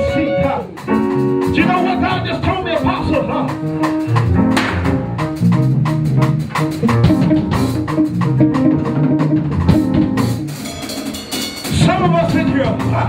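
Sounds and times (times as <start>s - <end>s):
person preaching: 0.0s - 0.8s, 1.5s - 3.6s, 11.7s - 13.0s
sustained keyboard chords: 0.0s - 10.7s
drum kit beat: 0.0s - 13.0s.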